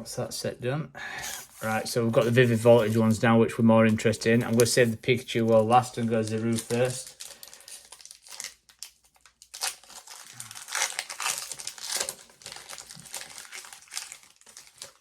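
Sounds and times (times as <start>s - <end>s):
foil wrapper crinkling: 5.4s - 15.0s.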